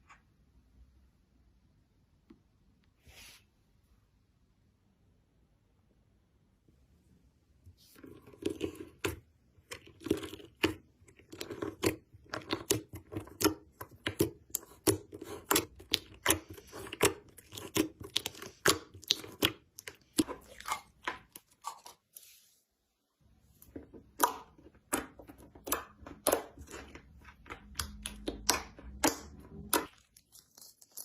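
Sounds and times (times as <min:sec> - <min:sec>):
slime squelching: 0:07.8 - 0:22.5, 0:23.3 - 0:31.0
slime crackling and popping: 0:11.4 - 0:21.5, 0:24.1 - 0:31.0.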